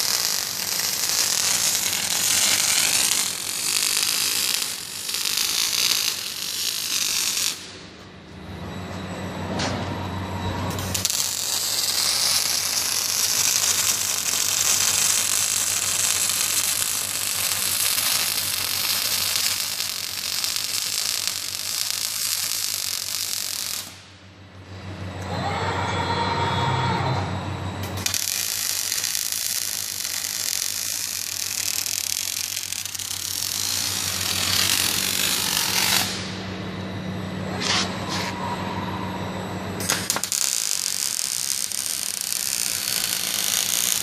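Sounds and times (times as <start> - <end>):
welding arc crackling hiss: 0.0 - 7.8, 10.8 - 24.1, 28.0 - 36.4, 39.8 - 44.0.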